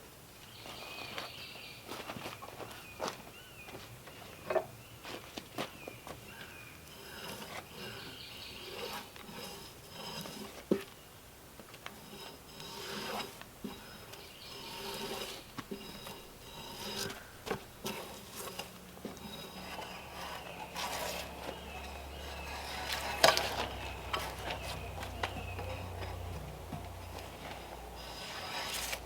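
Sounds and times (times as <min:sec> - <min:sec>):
hand tools scraping log: 0:05.6 - 0:29.0
low steady hum: 0:06.7 - 0:29.0.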